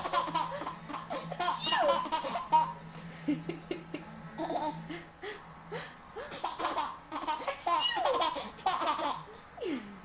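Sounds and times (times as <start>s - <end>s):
baby laughing: 0.0s - 2.8s, 6.2s - 9.3s.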